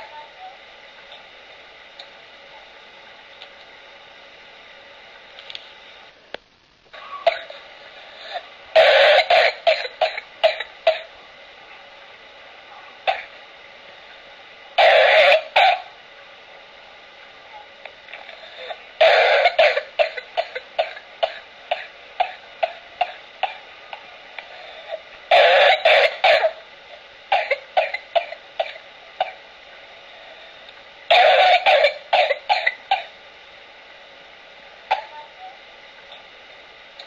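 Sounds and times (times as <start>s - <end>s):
infant coughing fits: 7.2s - 7.6s, 8.2s - 11.1s, 13.1s - 13.4s, 14.8s - 15.9s, 18.6s - 23.6s, 25.3s - 26.6s, 27.3s - 29.4s, 31.1s - 33.2s, 34.9s - 35.3s.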